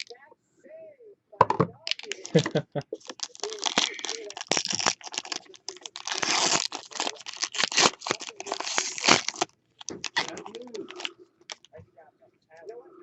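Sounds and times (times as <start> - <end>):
plastic wrapping crinkling and tearing: 1.8 - 11.7.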